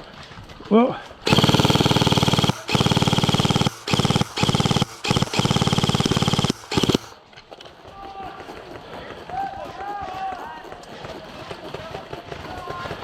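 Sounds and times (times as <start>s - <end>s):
airsoft rifle firing bursts: 1.3s - 7.2s.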